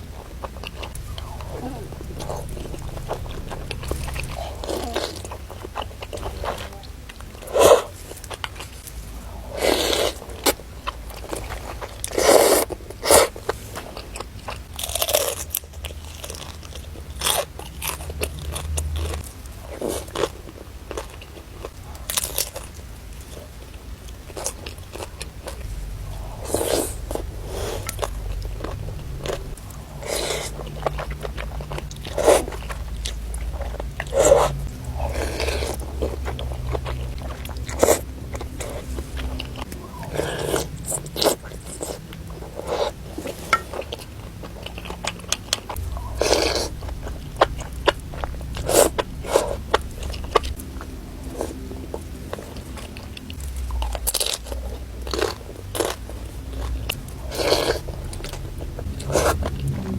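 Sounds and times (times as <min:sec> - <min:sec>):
person chewing noodles: 0:00.0 - 0:59.9.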